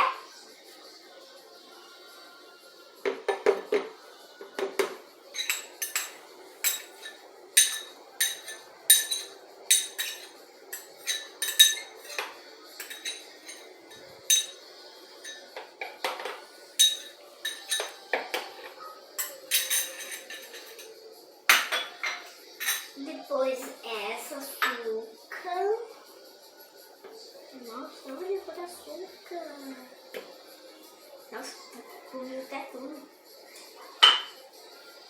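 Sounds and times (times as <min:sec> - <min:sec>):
metal spoon clinking against dish: 0:04.8 - 0:23.0, 0:34.0 - 0:34.4.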